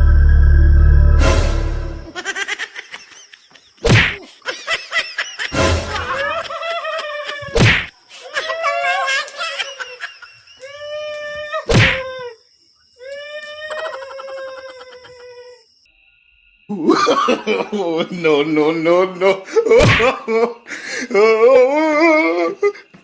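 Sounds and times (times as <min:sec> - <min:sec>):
loud whacks: 0:03.8 - 0:04.2, 0:07.5 - 0:08.0, 0:11.7 - 0:12.0, 0:19.8 - 0:20.2.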